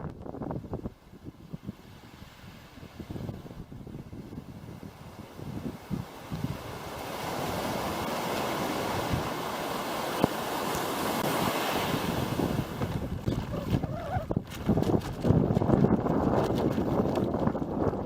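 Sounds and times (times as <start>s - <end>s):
wind buffeting microphone: 0.0s - 18.0s
water rushing along a hull: 0.1s - 18.0s
gusty low rumbles: 12.2s - 18.0s.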